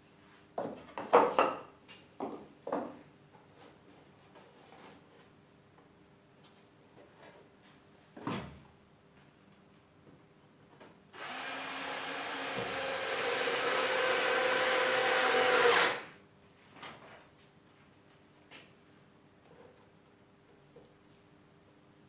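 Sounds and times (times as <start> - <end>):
disc sander running: 11.2 - 16.1.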